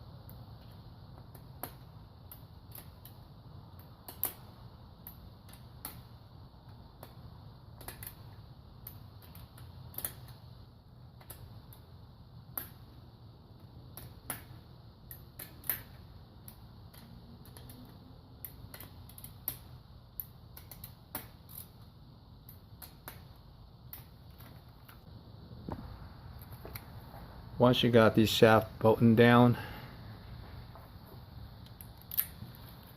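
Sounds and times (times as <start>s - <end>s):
steady low hum: 0.0s - 32.9s
metallic clicks of hand tools: 15.1s - 21.8s.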